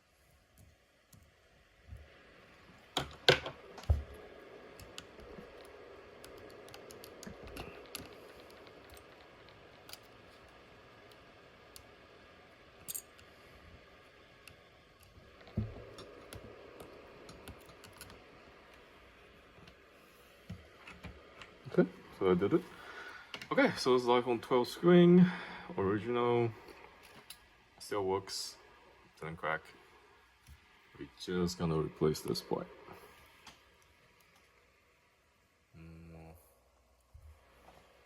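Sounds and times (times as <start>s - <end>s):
tools clicking and tapping: 12.8s - 13.2s.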